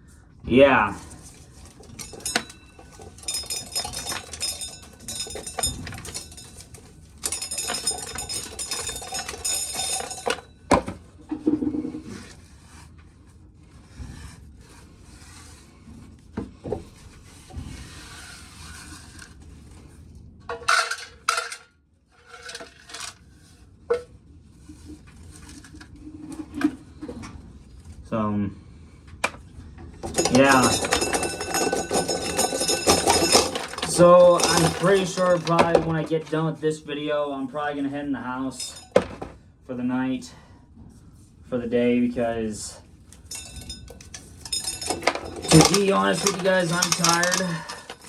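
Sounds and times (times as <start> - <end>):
corn kernels rattling: 1.0 - 10.4, 30.0 - 36.3, 43.3 - 48.0.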